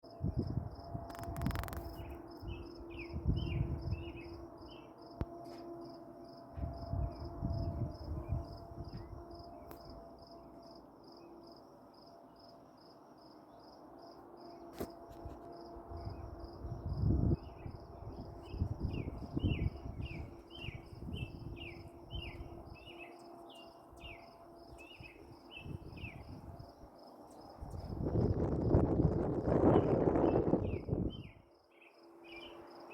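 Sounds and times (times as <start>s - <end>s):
insect chirping: 0.2s - 32.9s
bird chirping: 17.5s - 26.4s, 30.3s - 32.9s.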